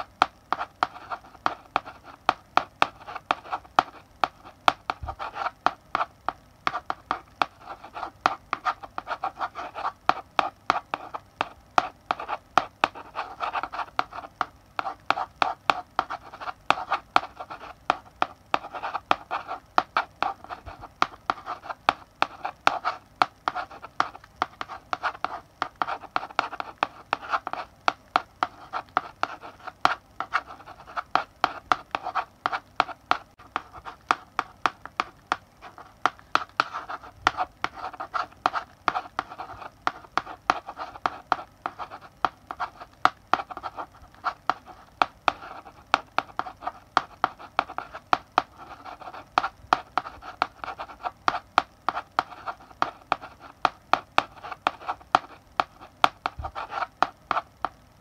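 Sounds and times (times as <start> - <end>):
chalk writing on blackboard: 0.0 - 57.5.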